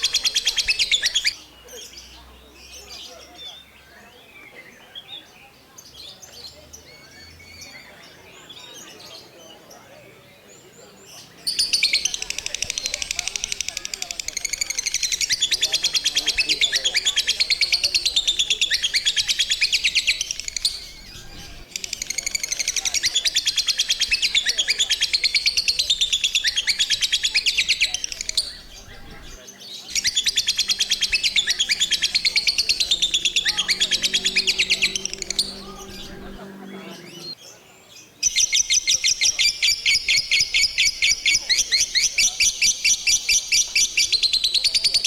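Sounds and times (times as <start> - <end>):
lovebird chattering: 0.0 - 1.4, 11.4 - 37.4.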